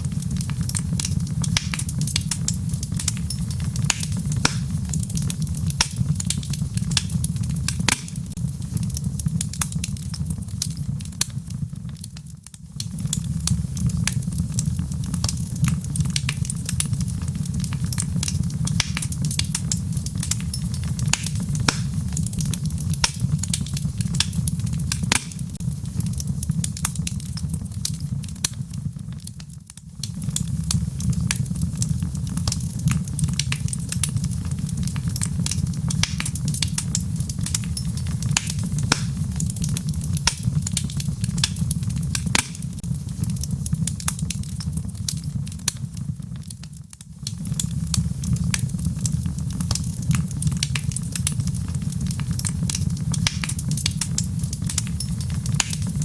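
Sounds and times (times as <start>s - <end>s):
fire crackling and popping: 0.0s - 56.0s
fire flames rumbling: 0.0s - 56.0s.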